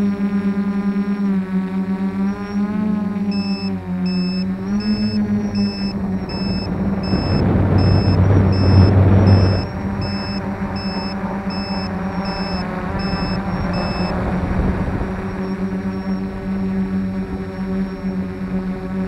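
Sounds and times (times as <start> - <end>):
drone motors humming: 0.0 - 19.0
high electronic beep: 3.3 - 14.2.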